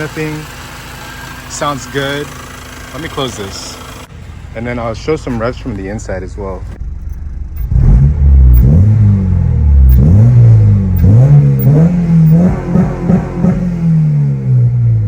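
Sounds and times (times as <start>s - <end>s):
car engine revving in blips: 7.0s - 15.0s.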